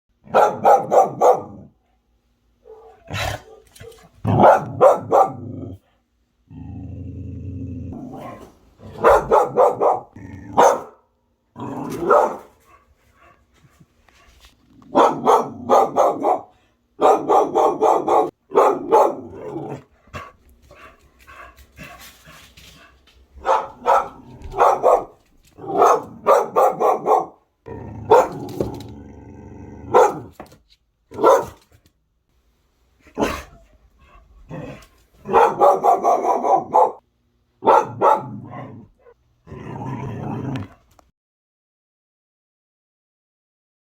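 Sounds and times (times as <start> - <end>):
dog barking: 0.2 - 1.8, 2.6 - 5.7, 8.0 - 11.1, 11.9 - 12.9, 14.9 - 20.3, 23.4 - 27.4, 28.0 - 28.5, 29.9 - 30.4, 31.1 - 31.7, 33.1 - 33.6, 35.2 - 37.0, 37.6 - 39.2.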